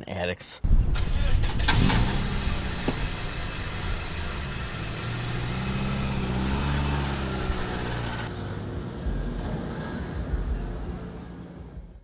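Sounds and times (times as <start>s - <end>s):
car engine revving: 0.9s - 8.3s.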